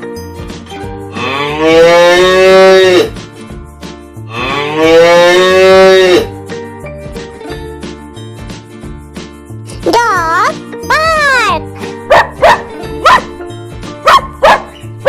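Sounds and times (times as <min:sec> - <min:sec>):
background music: 0:00.0 - 0:15.0
cow mooing: 0:01.2 - 0:03.1, 0:04.3 - 0:06.3.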